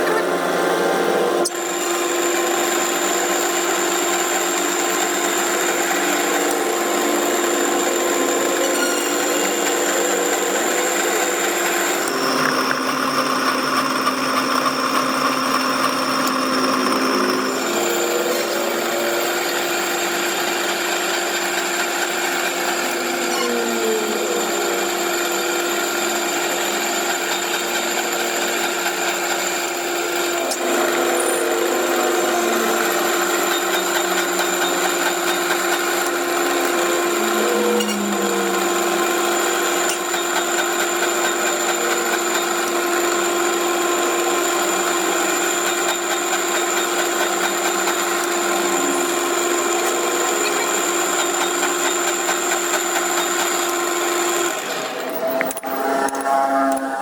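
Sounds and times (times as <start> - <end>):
electric power tool whining: 0.0 - 57.0.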